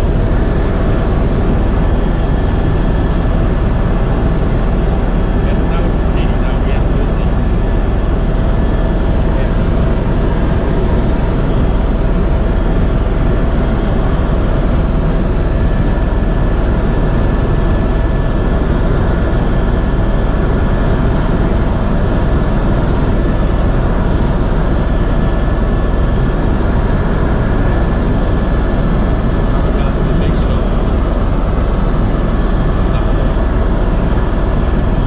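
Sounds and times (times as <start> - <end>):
helicopter engine and rotor noise: 0.0 - 35.0.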